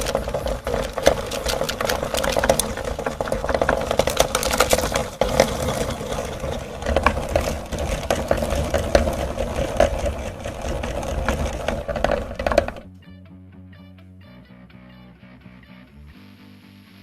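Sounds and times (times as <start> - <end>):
chocolate cracking: 0.0 - 12.9
meat grinder motor hum: 0.0 - 12.9.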